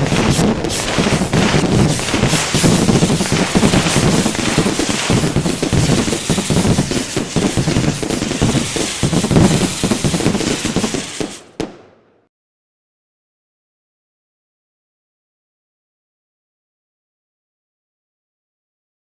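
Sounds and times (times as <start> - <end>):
fireworks bangs and crackles: 0.0 - 12.3.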